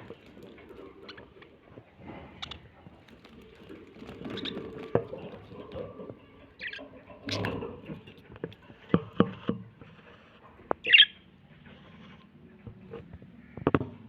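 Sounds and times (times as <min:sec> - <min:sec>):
rustling and small clicks: 0:00.0 - 0:06.2
budgerigars chattering: 0:06.6 - 0:07.4, 0:10.8 - 0:11.1.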